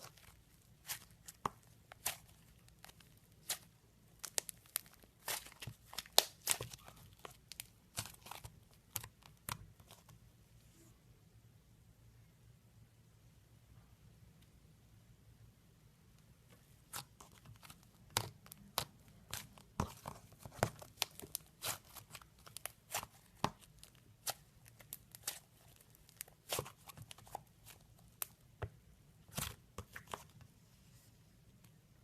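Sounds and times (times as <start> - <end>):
slime crackling and popping: 0.0 - 9.6, 16.9 - 28.4.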